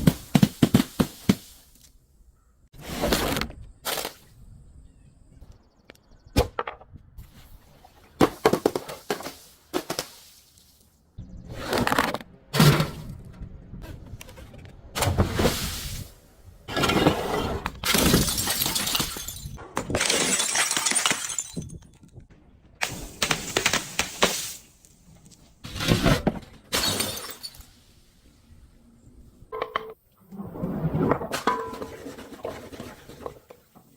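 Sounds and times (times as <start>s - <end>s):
glass bottle shattering: 17.8s - 22.0s, 26.7s - 27.8s.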